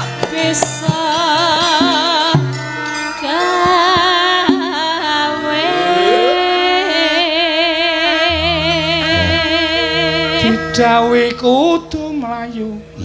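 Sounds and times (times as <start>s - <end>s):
woman singing long held notes: 3.2s - 12.8s
gamelan music: 8.3s - 11.0s.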